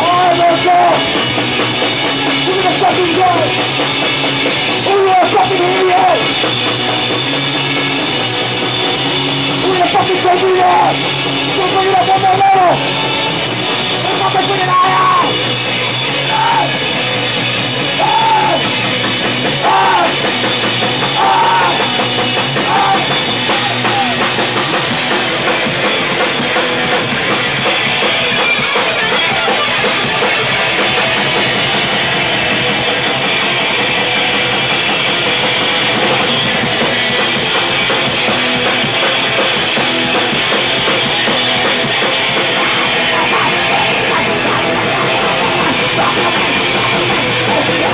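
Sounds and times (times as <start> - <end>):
rock band playing loud: 0.0 - 47.9
person singing: 42.3 - 47.9.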